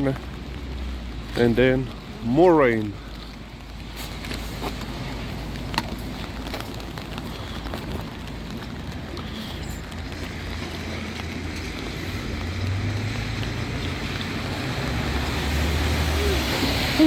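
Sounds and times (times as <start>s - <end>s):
traffic hiss on wet road: 0.0s - 17.0s
vehicle engine hum: 0.0s - 17.0s.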